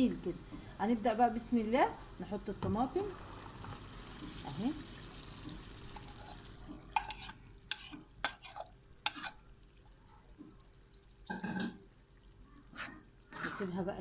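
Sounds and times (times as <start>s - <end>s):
onions sizzling in a frying pan: 0.0s - 10.1s
spoon stirring and clicking on pan: 5.4s - 9.4s.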